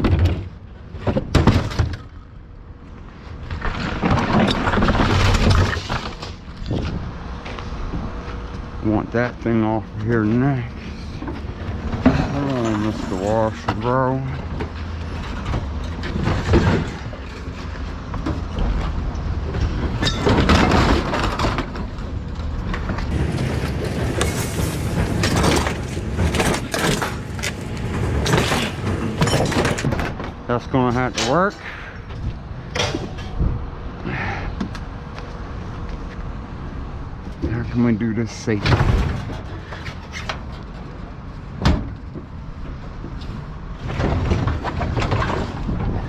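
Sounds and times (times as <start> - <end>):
metal scraping and clanking: 10.0 - 31.7
low engine rumble: 21.0 - 40.0
scrap metal crashing onto pile: 23.1 - 30.2.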